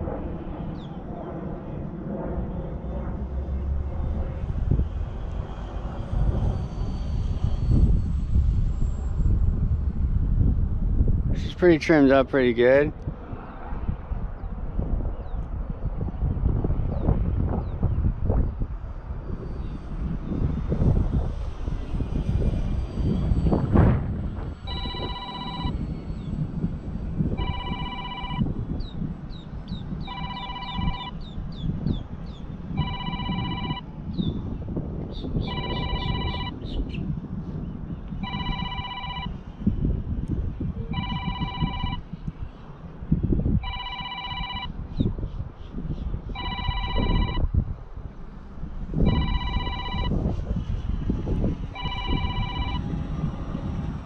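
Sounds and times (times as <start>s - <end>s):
wind buffeting microphone: 0.0s - 54.0s
electronic telephone ring: 24.7s - 25.8s, 27.4s - 28.5s, 30.0s - 31.2s, 32.8s - 33.8s, 35.5s - 36.6s, 38.2s - 39.3s, 41.0s - 42.0s, 43.6s - 44.8s, 46.4s - 47.5s, 49.0s - 50.2s, 51.8s - 52.8s.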